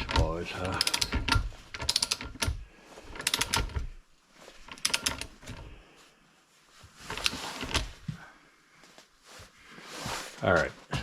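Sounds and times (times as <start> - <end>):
hand tools clicking: 0.0 - 2.6, 3.2 - 3.8, 4.7 - 5.6
rustling scrape: 5.6 - 8.1, 9.2 - 10.8.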